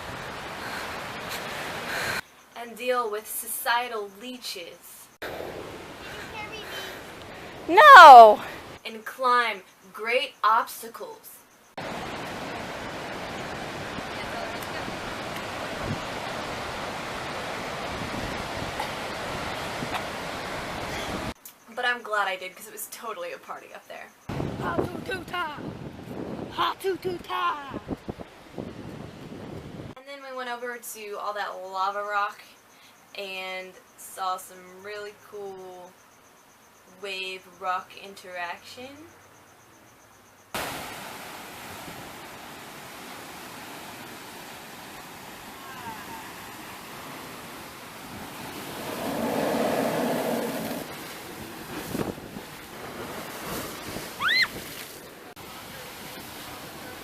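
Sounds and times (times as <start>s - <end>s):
ocean surf: 0.0s - 2.2s, 5.3s - 8.8s, 11.8s - 21.4s, 40.6s - 57.0s
wind: 0.0s - 57.0s.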